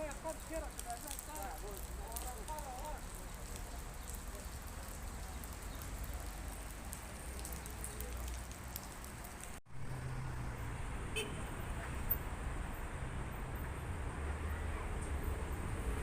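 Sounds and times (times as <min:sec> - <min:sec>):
faint crackles: 0:00.0 - 0:09.6.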